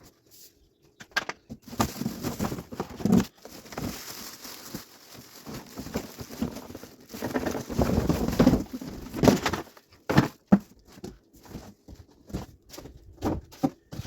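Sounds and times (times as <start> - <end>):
packaging rustling: 1.6 - 10.5.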